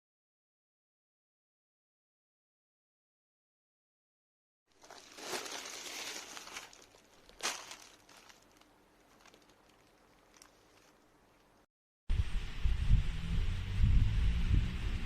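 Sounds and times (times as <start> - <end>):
crinkling and rustling: 4.7 - 11.7
sharp crackle: 4.7 - 11.7.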